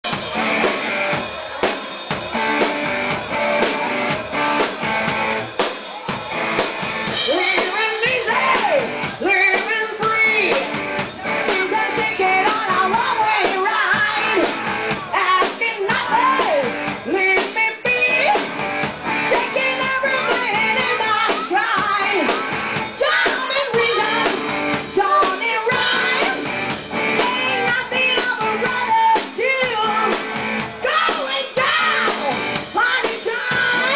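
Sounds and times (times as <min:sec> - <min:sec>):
drum kit: 0:00.0 - 0:33.9
electric guitar: 0:00.1 - 0:33.9
person singing: 0:07.1 - 0:18.5, 0:19.1 - 0:33.9.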